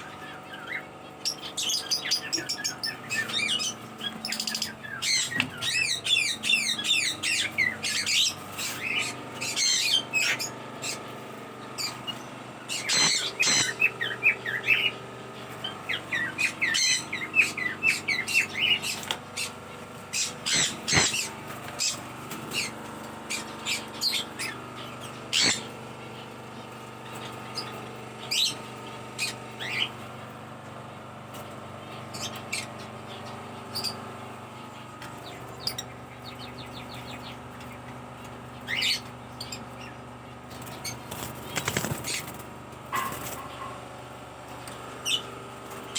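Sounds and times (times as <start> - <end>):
parrots chirping: 0.0 - 11.0, 11.8 - 15.0, 15.6 - 19.5, 20.1 - 25.7, 32.1 - 34.0, 38.7 - 39.9, 45.0 - 45.3.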